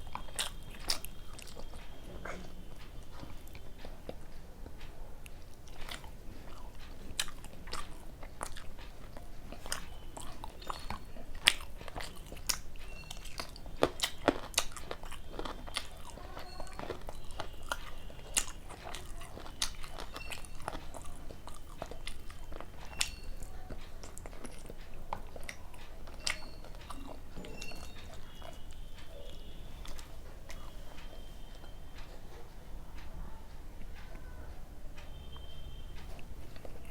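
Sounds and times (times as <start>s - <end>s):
wet mouth clicks: 0.0s - 31.6s
person chewing crunchy food: 0.0s - 32.1s.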